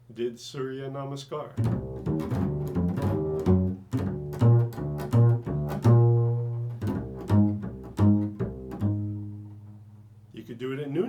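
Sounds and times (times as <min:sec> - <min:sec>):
plucked string instrument notes: 0:01.6 - 0:10.1.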